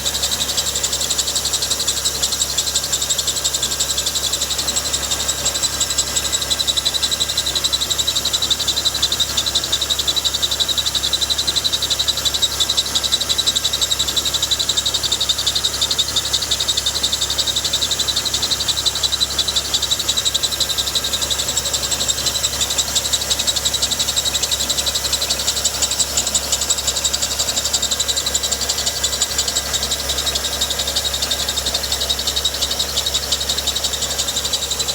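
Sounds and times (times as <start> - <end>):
pulsing high-pitched squeal: 0.0 - 34.9
low engine hum: 14.4 - 34.9.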